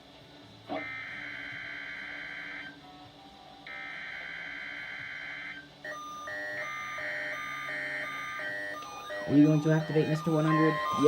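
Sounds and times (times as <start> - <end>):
digital data bursts: 3.9 - 11.0
repeating receiver beep: 7.7 - 11.0.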